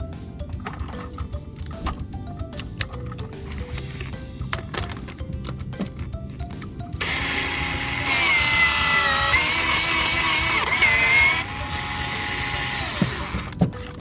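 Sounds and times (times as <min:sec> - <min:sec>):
power tool motor running: 0:07.0 - 0:13.6.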